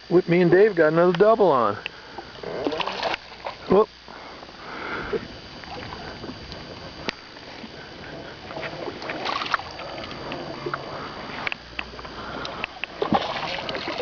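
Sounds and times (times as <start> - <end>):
water washing: 5.6 - 11.0, 12.2 - 14.0.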